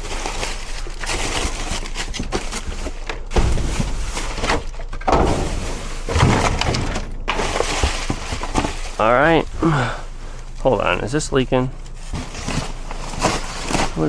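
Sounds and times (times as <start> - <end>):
rustling of bags and packaging: 0.0 - 14.0
thuds of items being moved: 2.0 - 10.6, 11.7 - 14.0.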